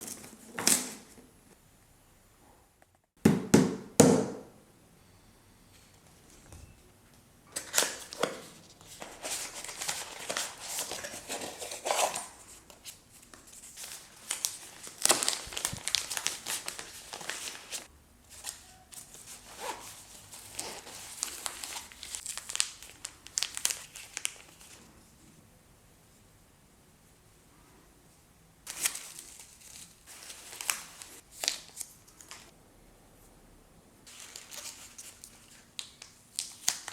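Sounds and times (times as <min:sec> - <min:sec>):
packaging rustling and crinkling: 0:07.6 - 0:24.9, 0:28.7 - 0:32.5, 0:34.1 - 0:36.9.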